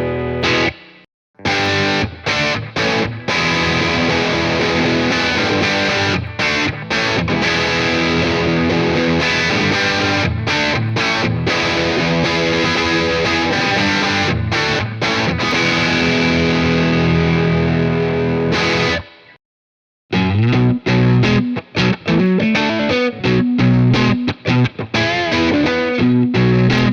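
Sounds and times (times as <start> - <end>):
distorted electric guitar riff: 0.0 - 19.4, 20.1 - 26.9.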